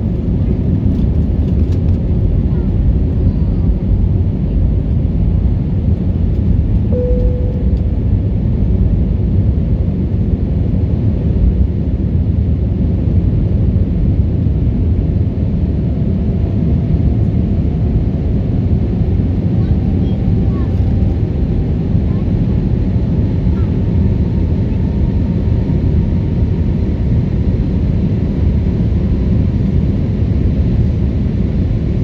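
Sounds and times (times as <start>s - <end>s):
airliner cabin engine rumble: 0.0s - 32.0s
brief tone: 6.9s - 8.3s.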